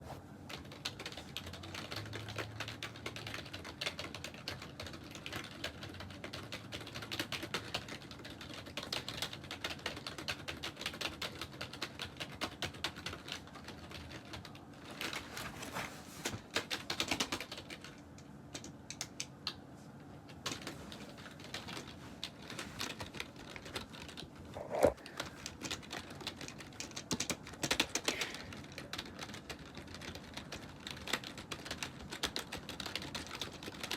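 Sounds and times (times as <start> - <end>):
computer keyboard typing: 0.5 - 15.4, 16.3 - 19.6, 20.2 - 33.9.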